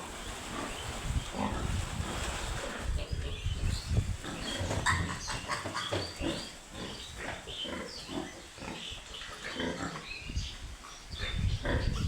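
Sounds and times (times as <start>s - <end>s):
piglets grunting and squeaking: 4.2s - 10.1s, 11.2s - 12.0s.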